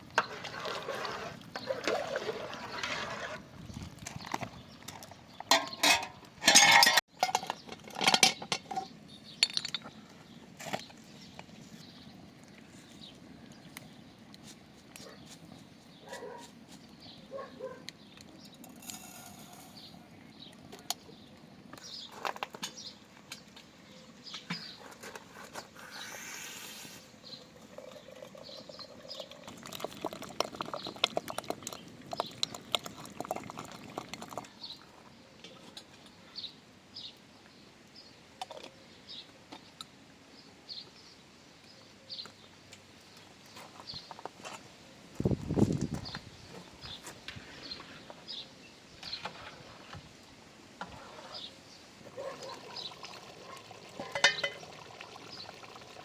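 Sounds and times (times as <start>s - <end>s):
faint outdoor background: 0.0s - 56.0s
clattering or rustling: 5.5s - 9.9s.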